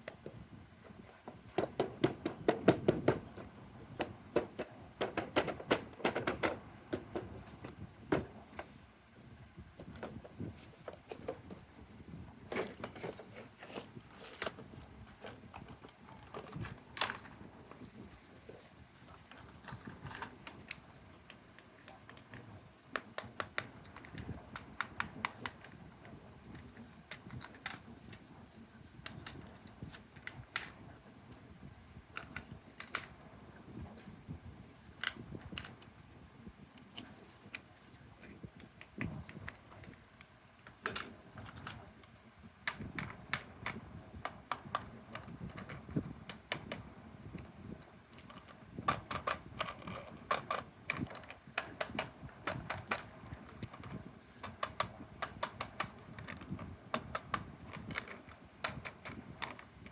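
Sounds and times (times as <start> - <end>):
plastic objects clicking: 48.1 - 59.9.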